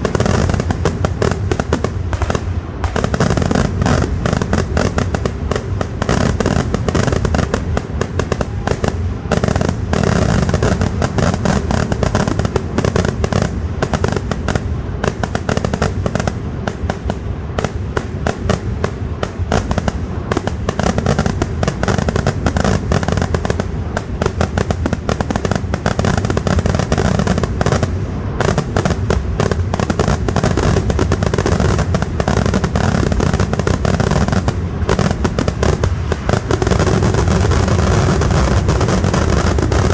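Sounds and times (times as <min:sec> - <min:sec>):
rapid firecracker bangs: 0:00.0 - 0:39.9.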